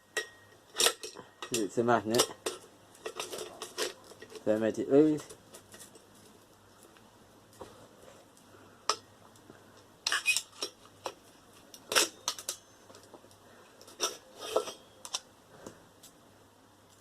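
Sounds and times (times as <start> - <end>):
metal parts clinking and rattling: 0.2 - 6.1, 10.0 - 11.2, 11.8 - 13.1, 13.8 - 15.2.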